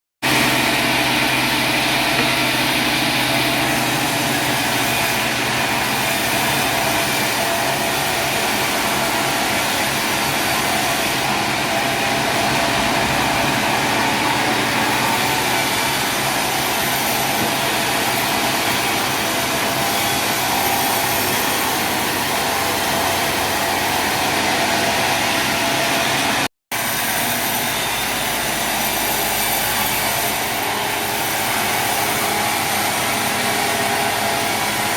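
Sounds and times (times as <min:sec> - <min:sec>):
sawmill machinery whining: 0:00.2 - 0:34.9.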